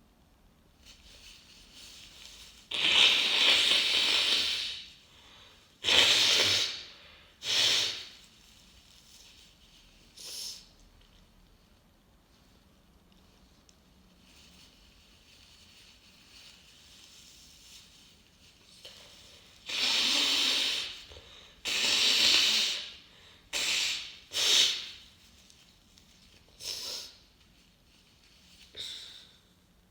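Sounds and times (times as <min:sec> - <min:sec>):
person blowing nose: 0:02.7 - 0:05.0, 0:05.8 - 0:08.2, 0:19.6 - 0:25.0.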